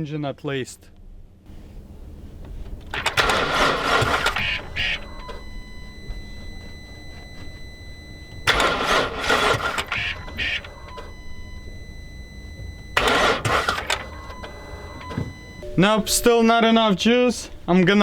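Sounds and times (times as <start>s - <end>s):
car starter clattering: 1.5s - 18.0s
electronic warning tone: 2.8s - 18.0s.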